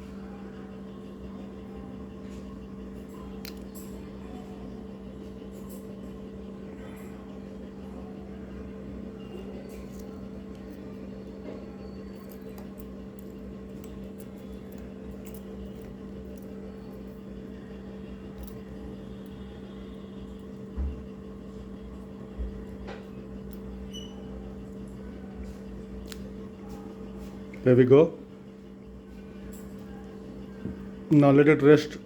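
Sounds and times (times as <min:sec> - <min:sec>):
steady mechanical hum: 0:00.0 - 0:32.0.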